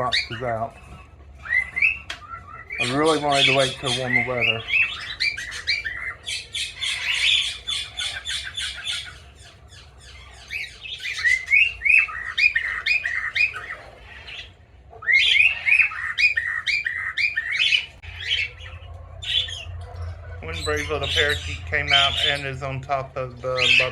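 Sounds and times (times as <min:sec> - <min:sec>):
parrots chirping and chattering: 0:00.0 - 0:23.9.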